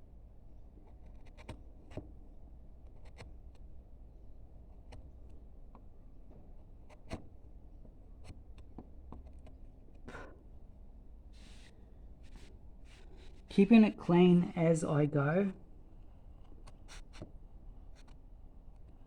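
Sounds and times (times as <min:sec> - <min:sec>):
carving gouge ticking into wood: 0:00.9 - 0:02.2, 0:02.8 - 0:03.7, 0:04.8 - 0:05.8, 0:06.8 - 0:07.4, 0:08.1 - 0:09.6, 0:16.4 - 0:19.0.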